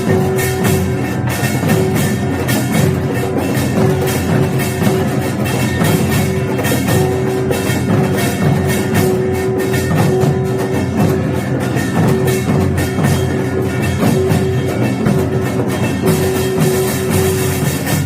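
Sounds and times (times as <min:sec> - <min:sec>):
drums and gongs playing: 0:00.0 - 0:18.0.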